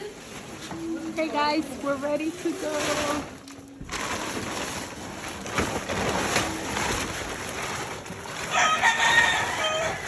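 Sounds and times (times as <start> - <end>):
rooster crowing: 8.5 - 10.0.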